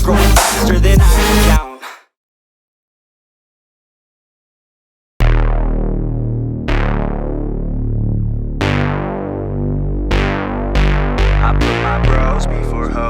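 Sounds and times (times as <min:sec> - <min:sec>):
sustained keyboard chords: 0:05.3 - 0:13.0.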